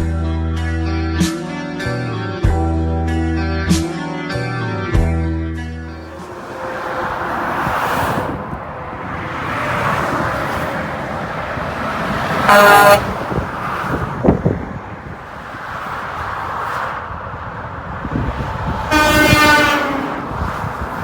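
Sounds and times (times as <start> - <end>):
highway traffic noise: 5.5 - 21.0
truck horn blast: 5.9 - 8.6, 12.3 - 13.5, 18.9 - 20.4.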